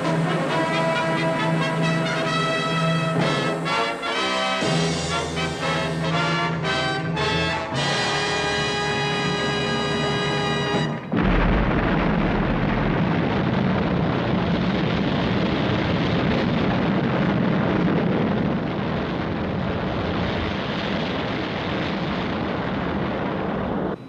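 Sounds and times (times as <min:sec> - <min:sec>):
rocket engines roaring: 0:00.0 - 0:24.0.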